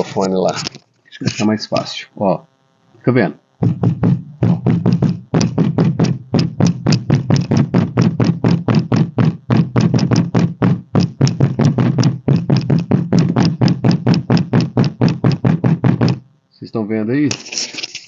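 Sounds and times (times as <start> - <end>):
hand knocking on rattling panel: 3.6 - 16.2.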